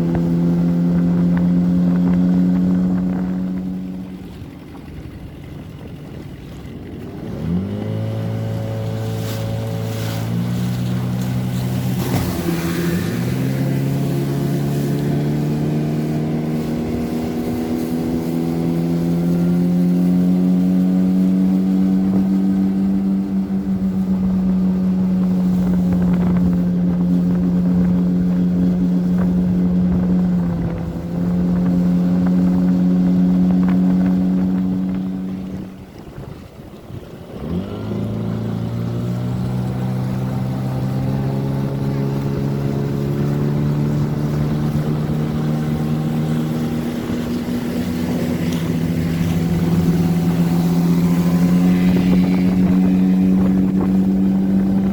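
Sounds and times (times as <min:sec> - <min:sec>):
outboard motors revving: 0:00.0 - 0:54.9.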